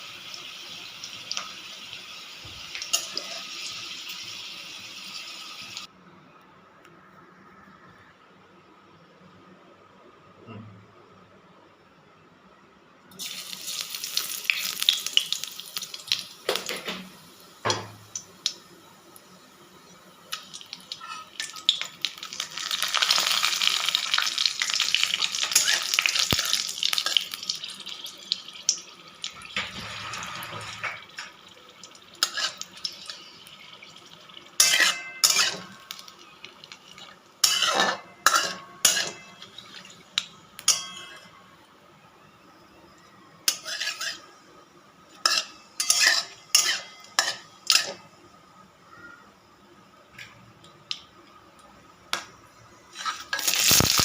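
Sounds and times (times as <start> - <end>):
food sizzling in hot oil: 0.0 - 5.9, 13.1 - 41.0, 43.5 - 44.3, 45.1 - 48.0, 52.9 - 54.0
spatula scraping a pan: 21.0 - 21.3, 32.2 - 33.3, 34.6 - 35.8, 37.4 - 39.3, 43.5 - 44.3, 45.2 - 48.0, 52.9 - 53.8.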